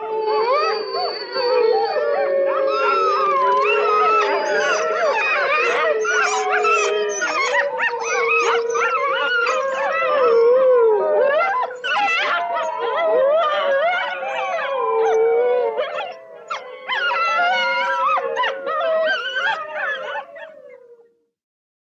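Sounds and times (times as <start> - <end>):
canines howling in chorus: 0.0 - 21.1.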